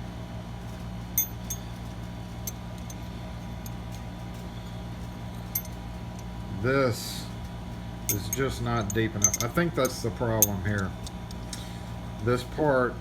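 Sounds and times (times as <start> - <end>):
steady low hum: 0.0 - 13.0
padlock metal clicks: 8.1 - 11.6.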